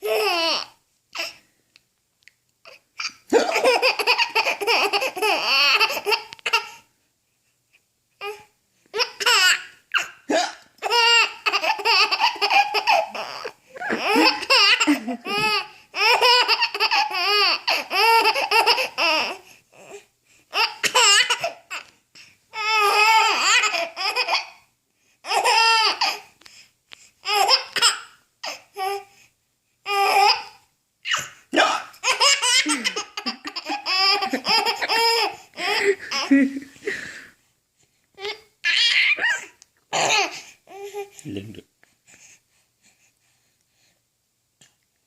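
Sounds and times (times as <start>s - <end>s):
baby giggling: 3.0s - 6.8s, 10.8s - 19.4s, 22.8s - 24.6s, 31.1s - 37.1s, 38.7s - 40.4s.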